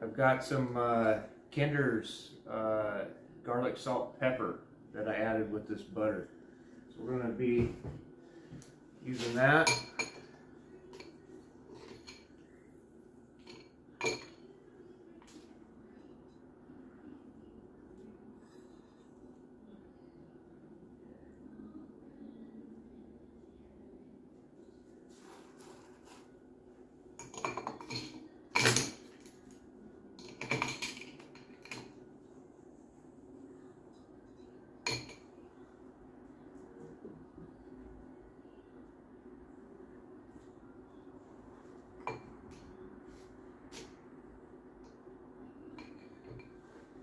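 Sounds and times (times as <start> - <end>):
utensils clinking on dishware: 9.2 - 12.4, 13.4 - 14.5, 27.2 - 29.4, 30.2 - 32.0, 34.8 - 35.3.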